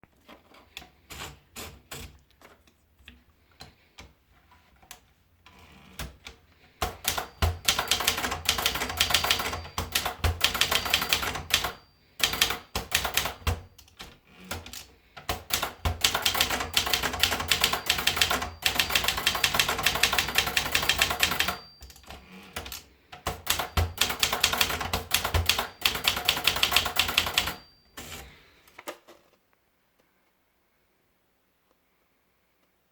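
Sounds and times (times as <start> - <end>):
typewriter keystrokes: 5.5 - 28.1
typewriter margin bell ringing: 6.8 - 13.7, 15.5 - 28.5.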